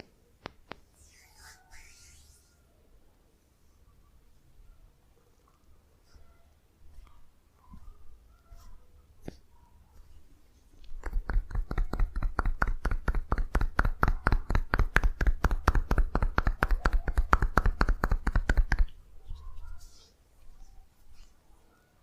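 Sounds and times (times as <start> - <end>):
hand-tapping massage strokes: 10.8 - 19.0.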